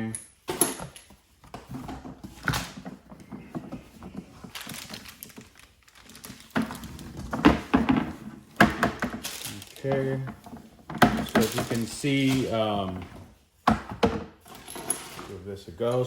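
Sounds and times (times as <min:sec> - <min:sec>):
hard plastic pieces knocking: 0:00.5 - 0:14.4
packaging rustling: 0:00.8 - 0:13.3.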